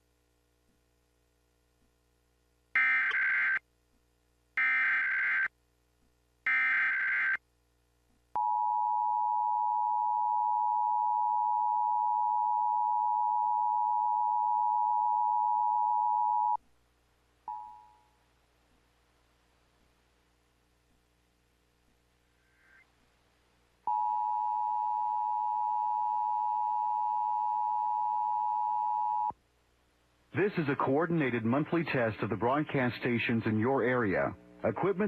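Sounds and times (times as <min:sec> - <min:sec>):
two-tone alarm: 0:02.8 - 0:03.6, 0:04.6 - 0:05.5, 0:06.5 - 0:07.4.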